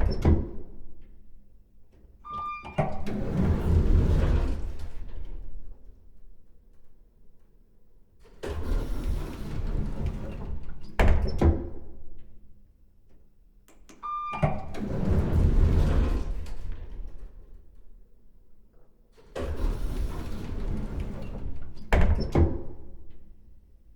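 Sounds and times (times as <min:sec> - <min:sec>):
elevator doors sliding: 0:02.2 - 0:05.9, 0:08.4 - 0:11.4, 0:14.0 - 0:17.8, 0:19.4 - 0:22.9
short beep: 0:02.3 - 0:02.8, 0:14.0 - 0:14.5
elevator doors clunking shut: 0:14.0 - 0:17.4.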